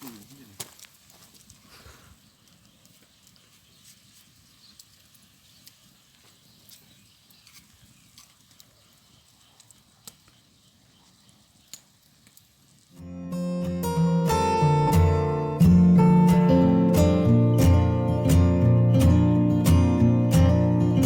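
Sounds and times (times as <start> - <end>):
acoustic guitar music: 12.9 - 21.0.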